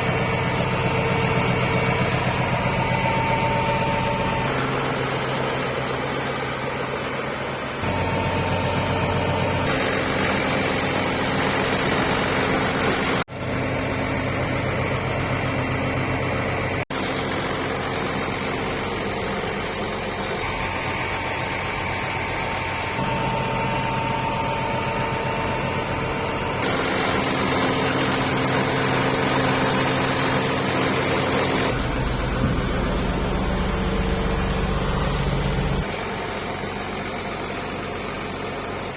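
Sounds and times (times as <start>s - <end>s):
tractor diesel engine running: 0.0s - 38.9s.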